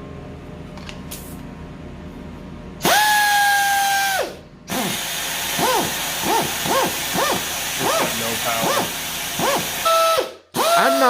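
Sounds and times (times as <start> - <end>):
air die grinder whining: 2.8 - 11.0.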